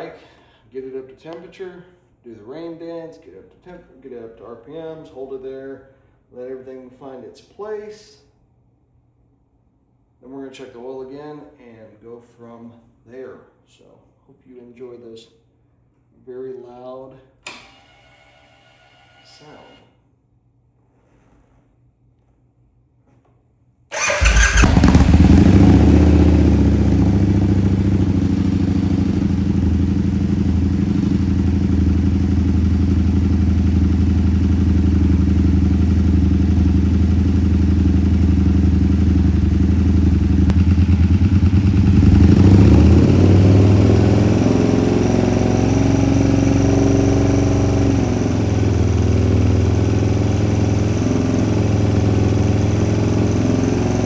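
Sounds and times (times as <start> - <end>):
motorcycle engine running: 23.9 - 54.0.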